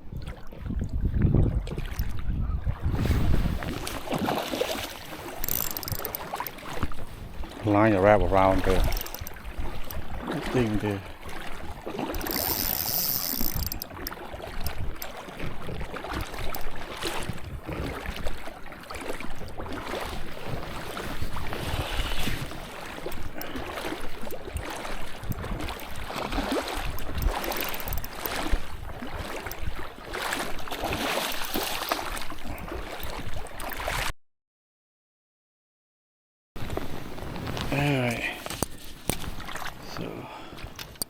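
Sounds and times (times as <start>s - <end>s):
wind buffeting microphone: 0.0s - 10.4s, 11.5s - 18.5s, 19.2s - 29.9s
rushing water: 1.5s - 34.1s, 36.6s - 40.9s.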